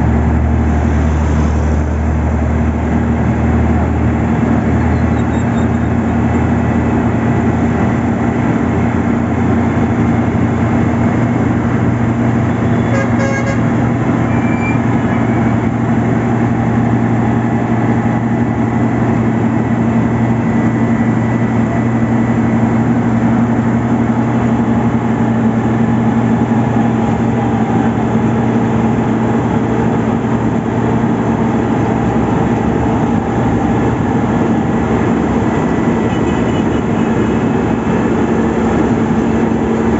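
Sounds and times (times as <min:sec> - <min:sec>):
heavy diesel machinery droning: 0:00.0 - 0:39.9.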